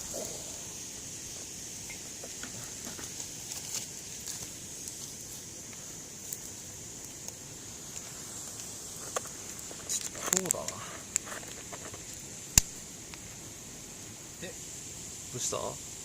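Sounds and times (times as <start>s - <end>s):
campfire crackling: 0.0s - 16.0s
steady high-pitched hiss: 0.0s - 16.0s
sharp pops: 5.7s - 13.4s.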